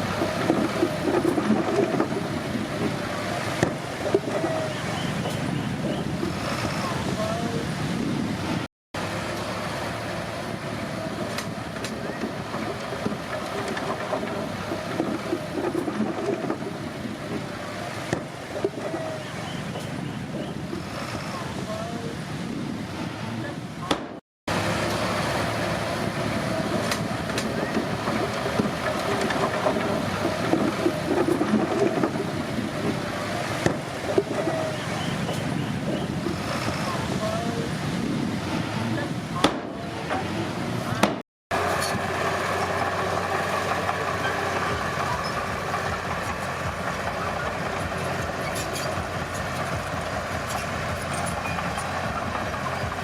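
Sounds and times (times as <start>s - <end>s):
bulldozer engine running: 0.0s - 23.9s, 24.5s - 53.0s
steel tracks clattering: 26.0s - 35.6s, 41.6s - 53.0s.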